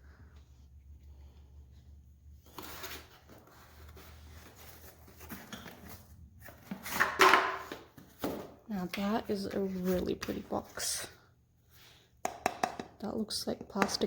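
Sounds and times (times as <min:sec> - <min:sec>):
cardboard rustling and rubbing: 0:02.4 - 0:07.0.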